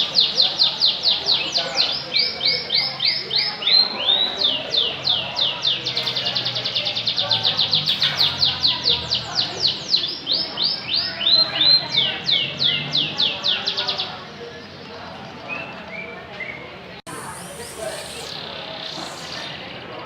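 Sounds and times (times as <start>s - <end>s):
canary singing: 17.1s - 19.8s.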